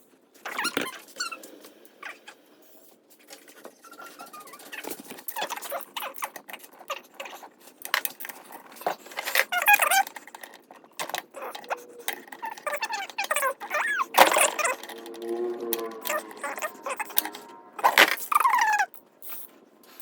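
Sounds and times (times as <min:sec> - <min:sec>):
clicking and clattering of tools: 0:04.8 - 0:16.2
high chirping squeaks: 0:11.3 - 0:15.2.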